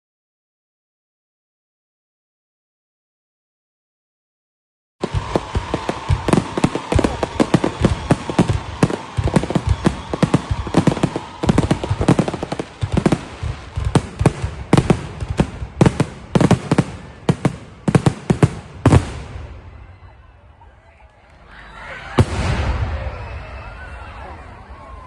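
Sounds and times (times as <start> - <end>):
firework bangs: 5.0 - 20.1, 22.1 - 24.0.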